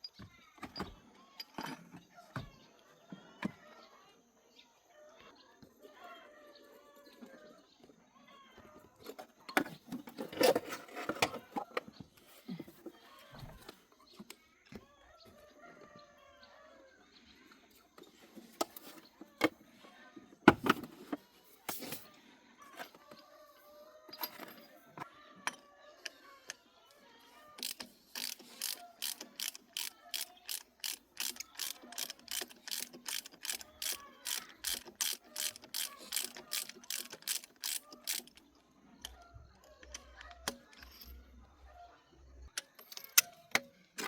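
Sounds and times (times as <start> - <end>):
ratchet wrench clicking: 27.6 - 38.4.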